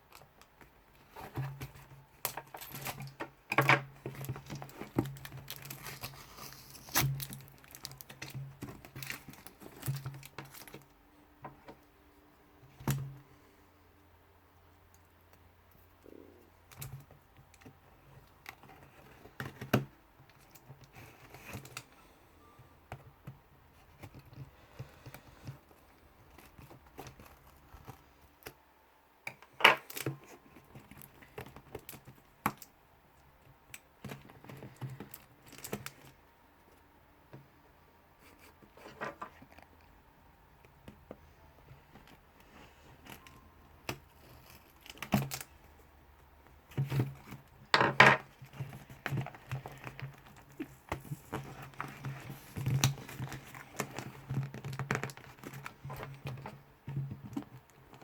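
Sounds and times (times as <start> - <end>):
tape and packaging tearing: 4.6 - 10.8.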